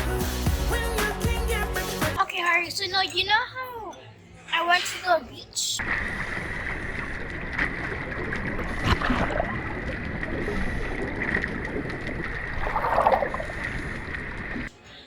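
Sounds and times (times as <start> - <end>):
wind: 3.5 - 15.0
sea water: 5.8 - 14.8.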